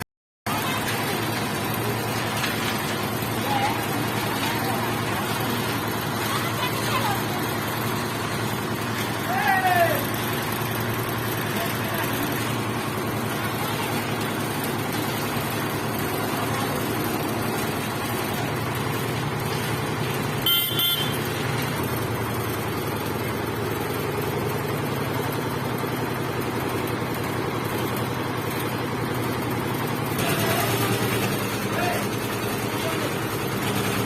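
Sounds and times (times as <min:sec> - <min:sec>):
concrete mixer engine running: 0:00.4 - 0:34.0
vehicle horn toots: 0:20.4 - 0:21.3.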